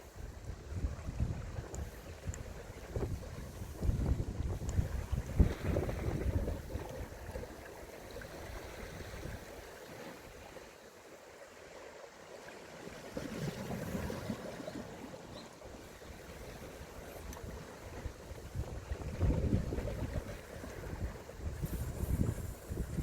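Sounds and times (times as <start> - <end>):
wind buffeting microphone: 0.0 - 9.6, 16.0 - 23.0
seawater lapping: 0.0 - 23.0.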